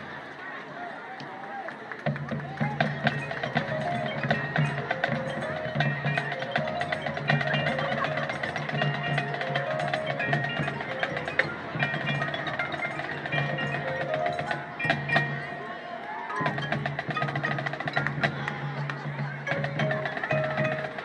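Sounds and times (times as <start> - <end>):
wood-block clicks: 1.9 - 21.0
mallet percussion playing: 2.0 - 21.0.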